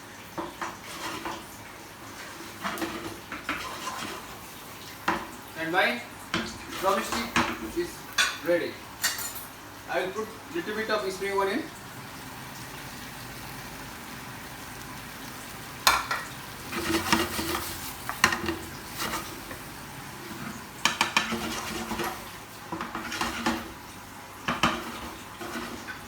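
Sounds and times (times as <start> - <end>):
faint sizzle: 0.0 - 26.0
metal utensil scraping a pan: 0.6 - 1.4, 2.2 - 4.4, 15.8 - 23.8, 24.5 - 26.0.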